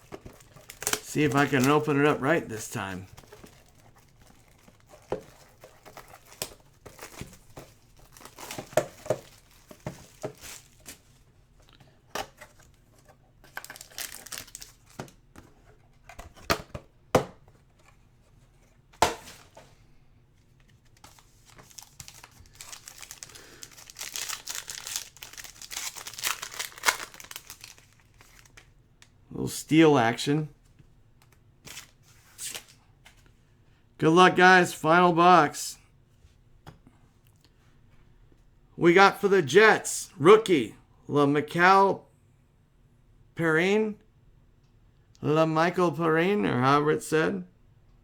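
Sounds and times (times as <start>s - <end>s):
wrapping crinkling and tearing: 0.0s - 11.3s, 13.4s - 15.0s, 20.6s - 28.8s.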